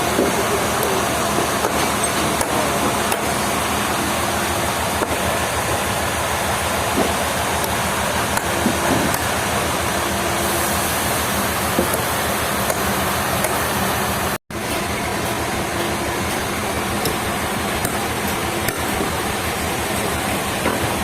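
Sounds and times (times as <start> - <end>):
sawmill machinery running: 0.0 - 21.0.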